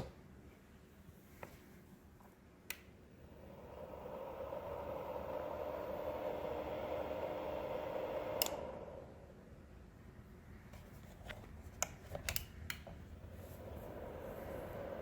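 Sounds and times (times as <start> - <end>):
heater fan hum: 0.0 - 15.0
heater clicking: 2.6 - 9.5, 13.6 - 15.0.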